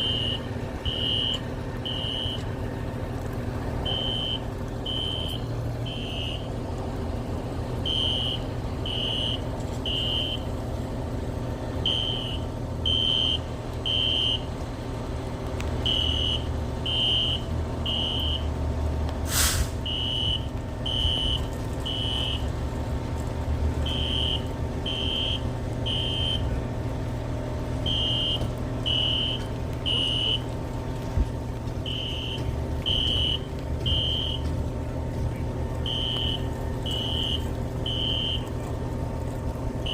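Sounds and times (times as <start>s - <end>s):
fire alarm beeps: 0.0s - 2.4s, 3.9s - 6.4s, 7.8s - 10.4s, 11.9s - 14.5s, 15.9s - 18.5s, 19.9s - 22.4s, 23.9s - 26.4s, 27.8s - 30.5s, 31.9s - 34.5s, 35.8s - 38.5s
steady low rumble: 0.0s - 39.9s.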